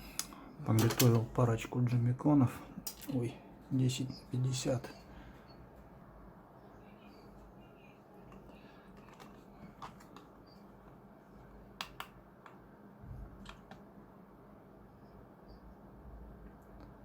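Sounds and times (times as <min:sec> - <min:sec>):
small clicks and taps: 0:11.8 - 0:12.6.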